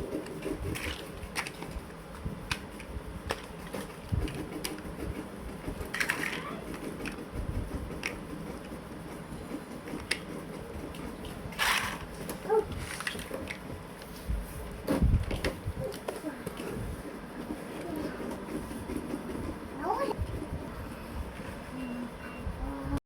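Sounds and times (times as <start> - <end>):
plastic building blocks clicking: 0.8 - 1.7, 5.8 - 7.2
plastic blocks rattling: 11.5 - 12.1, 12.7 - 13.6.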